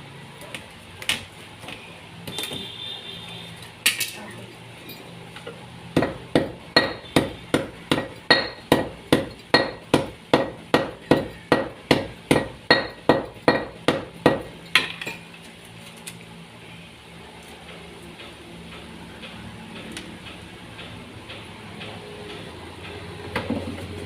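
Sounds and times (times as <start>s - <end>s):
hammer striking metal: 6.0s - 15.2s.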